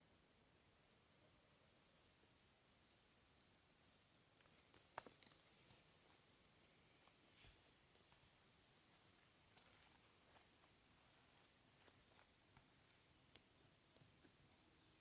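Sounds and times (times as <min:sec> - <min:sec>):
songbird singing: 0:03.9 - 0:15.0.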